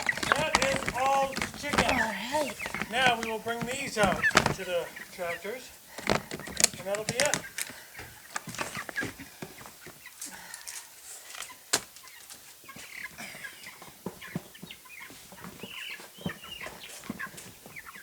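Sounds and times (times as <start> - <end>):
chickens peeping and clucking: 11.5 - 18.0.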